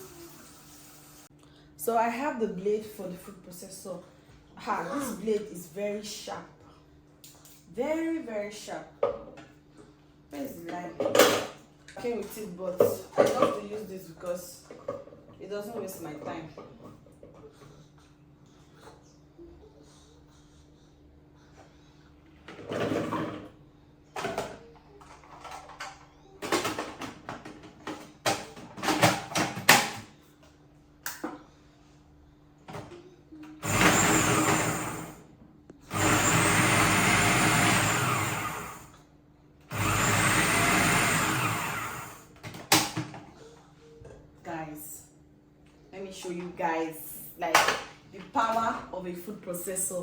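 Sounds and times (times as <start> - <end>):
food processor whirring: 33.6 - 39.0, 39.7 - 42.4.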